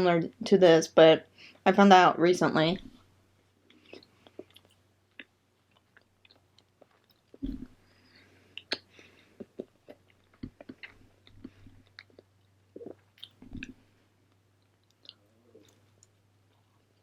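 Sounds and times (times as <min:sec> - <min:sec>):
chewing food: 0:03.6 - 0:17.0.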